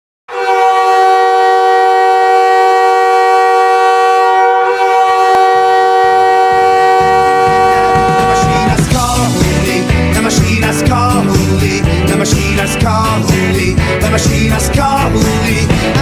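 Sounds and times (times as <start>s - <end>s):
goal horn blast: 0.3s - 8.9s
music: 6.4s - 16.0s.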